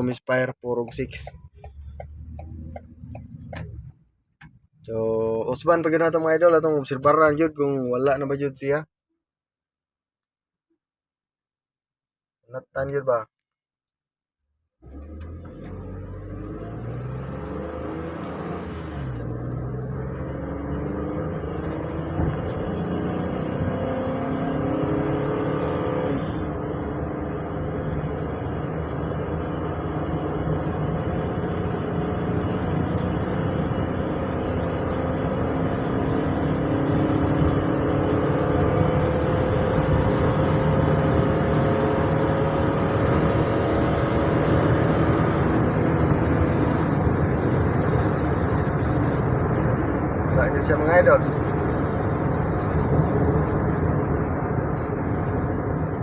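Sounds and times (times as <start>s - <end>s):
van engine accelerating: 0.8s - 4.3s, 14.8s - 56.0s.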